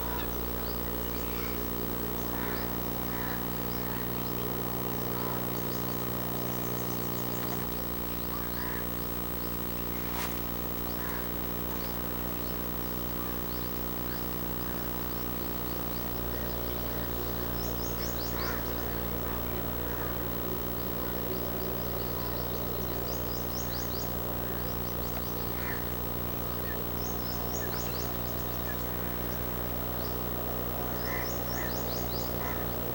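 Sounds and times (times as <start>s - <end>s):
low hum: 0.0s - 32.9s.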